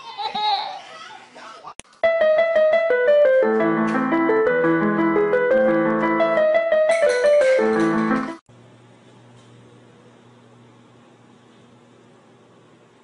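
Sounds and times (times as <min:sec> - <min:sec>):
piano music: 0:02.0 - 0:08.5.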